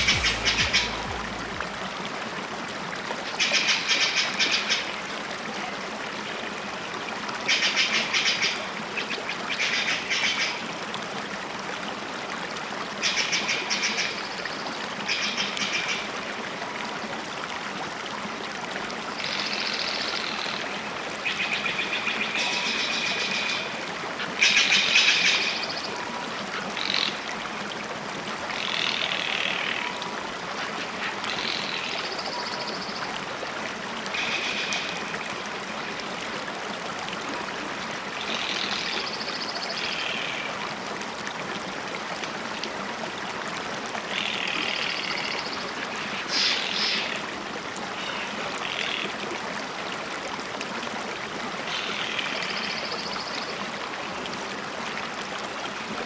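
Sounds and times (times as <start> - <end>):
bird calls: 0.0 - 1.4
loud sudden sounds: 0.0 - 1.8.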